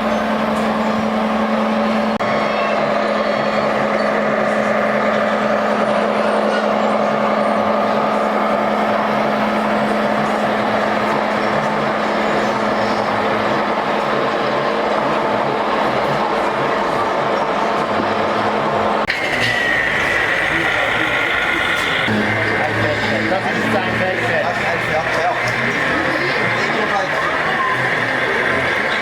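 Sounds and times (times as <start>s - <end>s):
model truck engine drone: 0.0s - 29.0s
constant hum: 19.1s - 29.0s.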